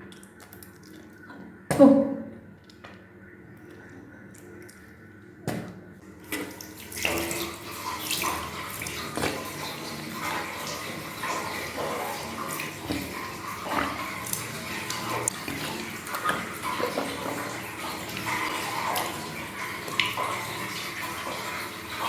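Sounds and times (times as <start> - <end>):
water splashing: 3.7 - 22.0
water pouring: 6.0 - 22.0.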